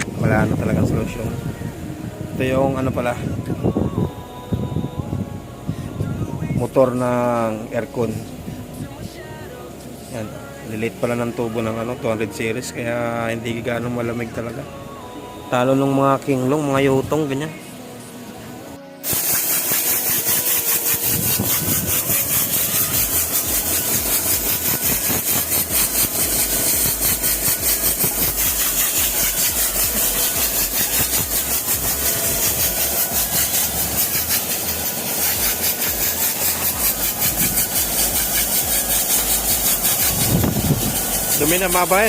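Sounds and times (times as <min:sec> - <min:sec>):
engine running steadily: 0:19.1 - 0:42.0.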